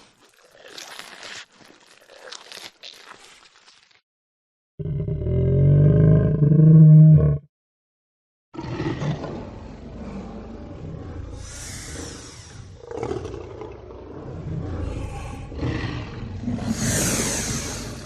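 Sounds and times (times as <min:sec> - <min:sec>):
dinosaur roar: 0:04.8 - 0:07.5, 0:08.6 - 0:18.0.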